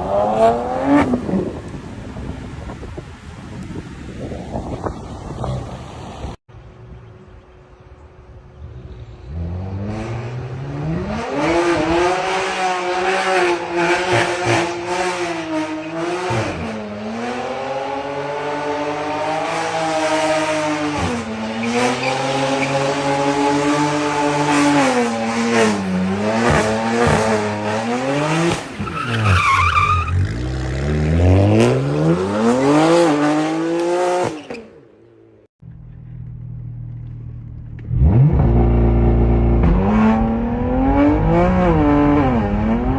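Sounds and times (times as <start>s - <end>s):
car engine revving: 35.7s - 42.9s.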